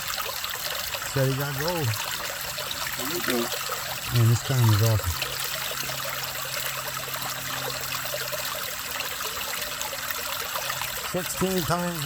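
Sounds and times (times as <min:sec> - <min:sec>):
water running and trickling: 0:00.0 - 0:12.0.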